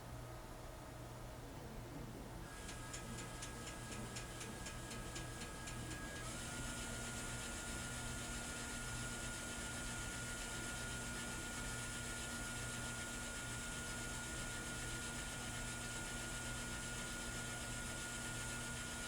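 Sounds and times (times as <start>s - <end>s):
machine motor whine: 5.0s - 12.5s.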